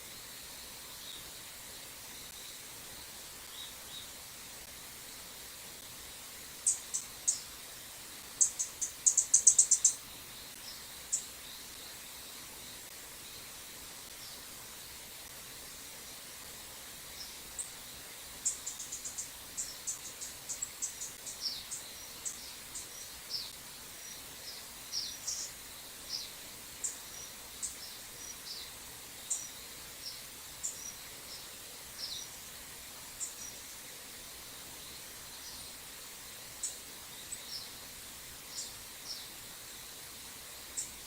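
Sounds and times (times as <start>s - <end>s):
small bird chip calls: 8.4s - 11.3s.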